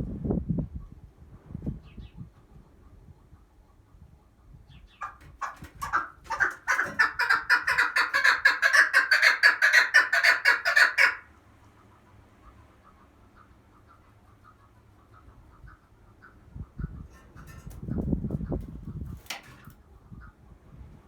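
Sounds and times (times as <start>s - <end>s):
partridge clucking call: 5.0s - 11.2s.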